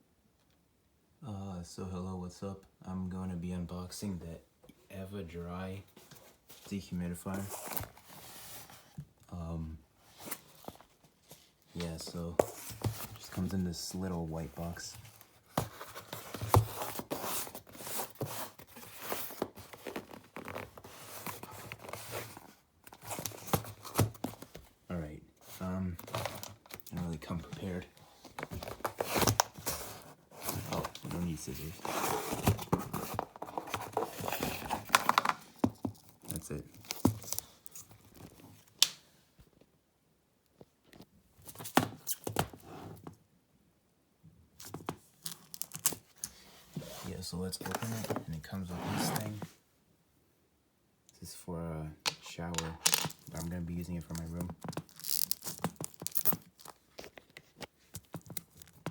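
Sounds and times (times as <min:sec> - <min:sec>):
packaging box being handled: 0:10.1 - 0:24.8, 0:25.4 - 0:38.7, 0:44.6 - 0:49.6, 0:52.1 - 0:58.9
cardboard clicking and rustling: 0:14.9 - 0:24.8, 0:26.0 - 0:38.7, 0:52.1 - 0:58.9.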